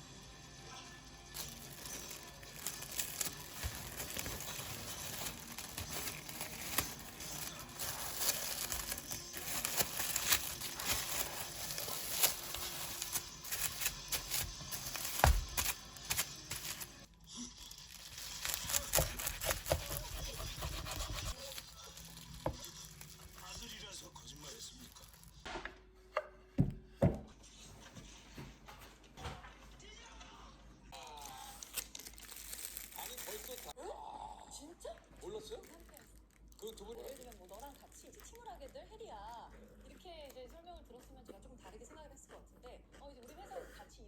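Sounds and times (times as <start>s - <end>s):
crinkling and rustling: 1.3s - 25.5s, 31.2s - 33.8s, 35.0s - 40.4s.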